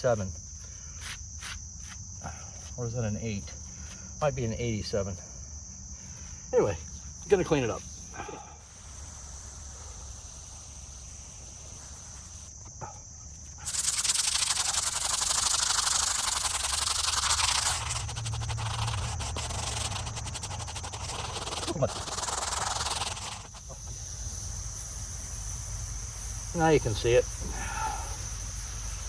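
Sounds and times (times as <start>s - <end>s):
insects chirring: 0.0s - 29.0s
brush scrubbing stone: 11.7s - 23.8s.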